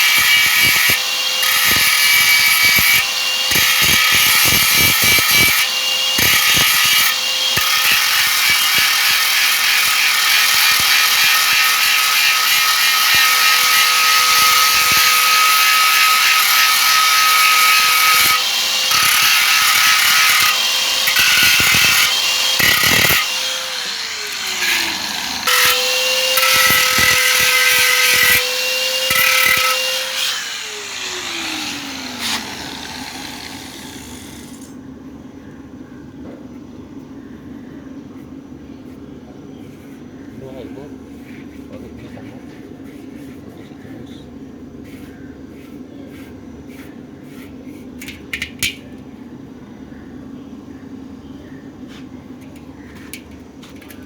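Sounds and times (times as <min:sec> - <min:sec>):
grinder grinding metal: 0:00.0 - 0:34.7
grinder spinning down: 0:00.0 - 0:34.7.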